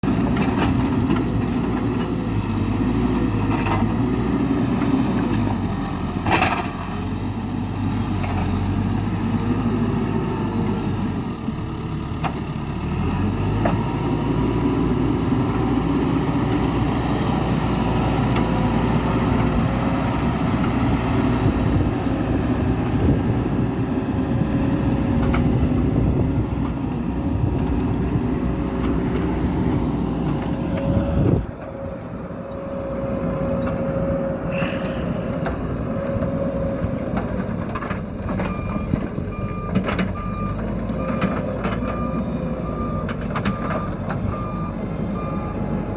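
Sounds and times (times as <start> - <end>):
diesel engine under load: 0.0 - 45.9
reversing alarm beeping: 30.8 - 37.6, 38.3 - 45.9.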